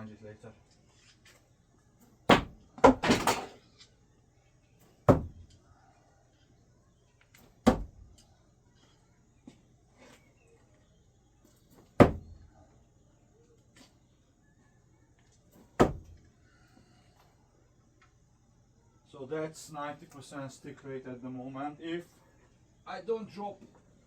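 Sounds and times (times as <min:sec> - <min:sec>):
screwdrivers knocking into target: 0:02.0 - 0:03.6, 0:04.8 - 0:05.6, 0:07.4 - 0:08.2, 0:11.7 - 0:12.5, 0:15.6 - 0:16.3.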